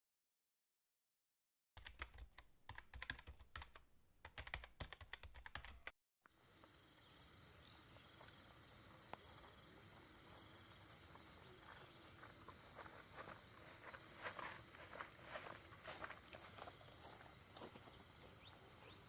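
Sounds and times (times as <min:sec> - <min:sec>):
rapid sharp clicks: 0:01.8 - 0:05.9
high insect drone: 0:06.3 - 0:19.0.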